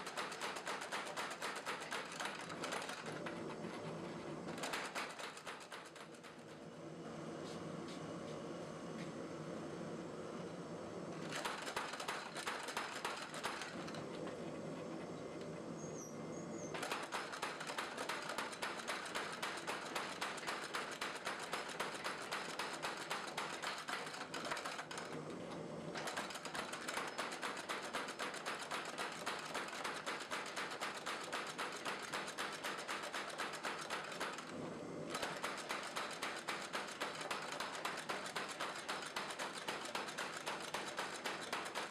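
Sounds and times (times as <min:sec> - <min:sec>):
power hammer striking blows: 0:26.0 - 0:34.5, 0:35.1 - 0:41.9.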